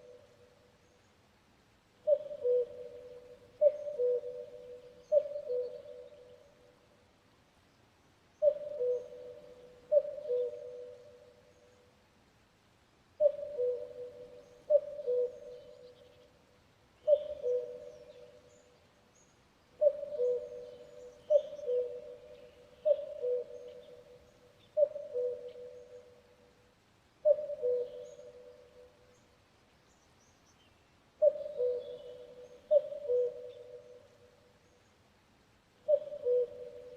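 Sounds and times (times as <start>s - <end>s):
cuckoo calling: 2.0s - 6.4s, 8.4s - 11.3s, 13.2s - 16.2s, 17.0s - 18.7s, 19.8s - 26.2s, 27.2s - 29.0s, 31.2s - 34.2s, 35.9s - 36.9s.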